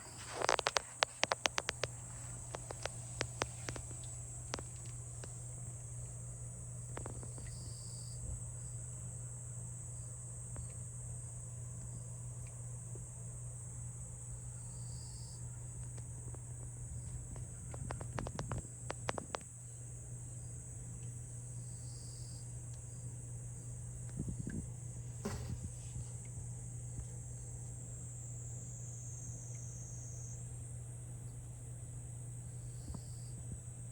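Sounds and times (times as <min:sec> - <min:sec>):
low steady hum: 0:00.0 - 0:33.9
sharp clicks: 0:00.1 - 0:04.8.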